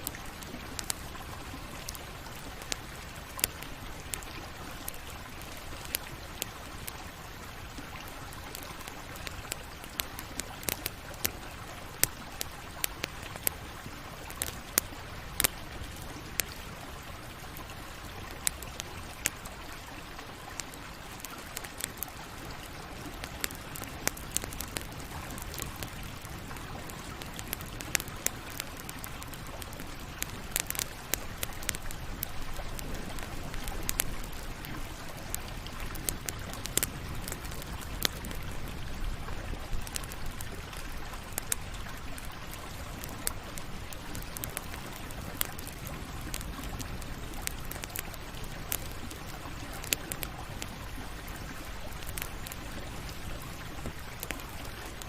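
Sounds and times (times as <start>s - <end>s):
wood crackling and popping: 0.0s - 55.0s
low rush of flame: 22.4s - 55.0s.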